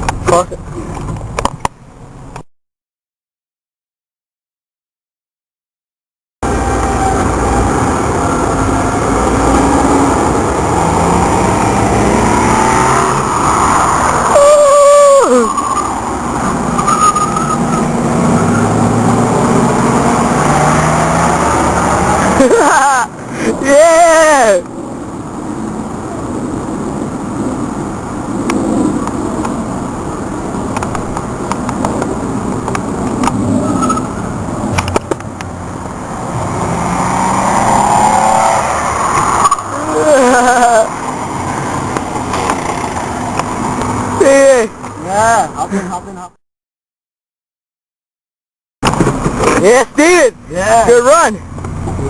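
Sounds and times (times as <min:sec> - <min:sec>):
road and wind noise: 0:00.0 - 0:02.5, 0:06.4 - 0:46.4, 0:48.8 - 0:52.0
car engine accelerating: 0:06.5 - 0:14.4, 0:15.8 - 0:22.8, 0:35.3 - 0:44.2.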